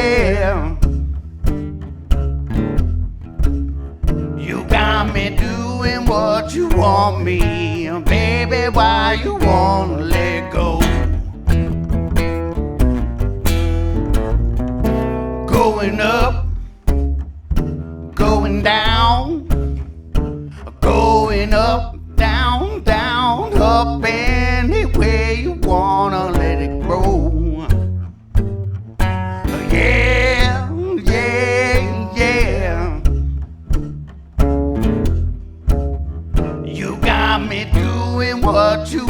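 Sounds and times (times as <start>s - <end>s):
live blues band playing: 1.4s - 18.6s.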